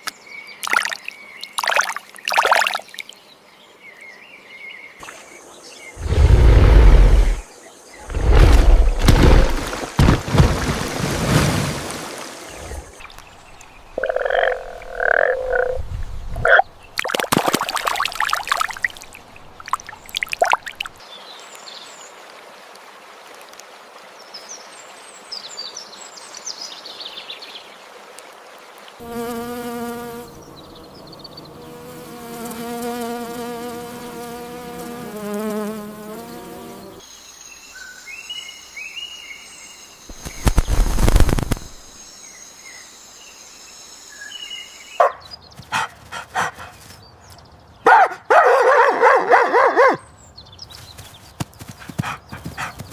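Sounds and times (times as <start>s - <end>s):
insect buzz: 5.0s - 20.9s, 28.8s - 45.0s
high insect trill: 35.5s - 44.9s.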